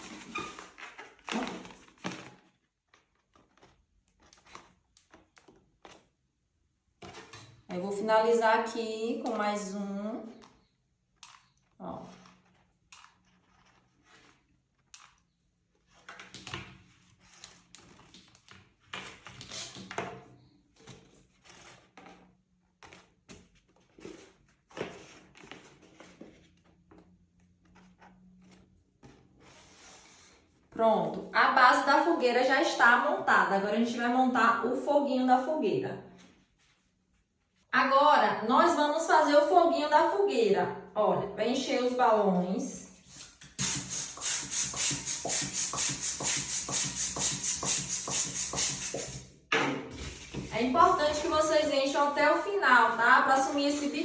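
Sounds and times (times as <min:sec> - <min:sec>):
balloons rubbing and rustling: 0:00.0 - 0:04.6, 0:12.0 - 0:14.9, 0:43.0 - 0:49.4
balloons rubbing and knocking: 0:43.0 - 0:51.6.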